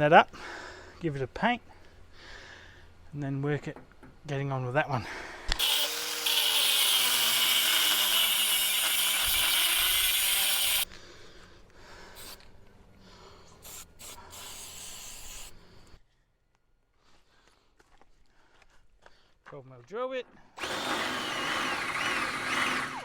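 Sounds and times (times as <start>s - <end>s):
angle grinder grinding metal: 5.6s - 10.9s, 20.6s - 23.0s.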